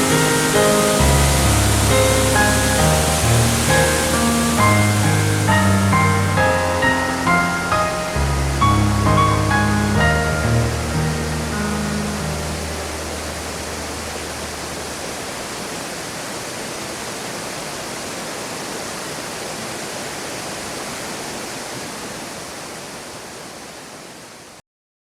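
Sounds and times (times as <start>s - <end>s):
background music: 0.0s - 14.5s
mountain water rushing: 0.0s - 24.6s.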